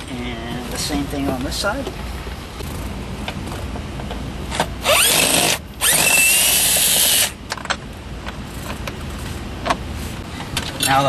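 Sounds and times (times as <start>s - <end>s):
cordless power drill whine: 4.8s - 7.4s.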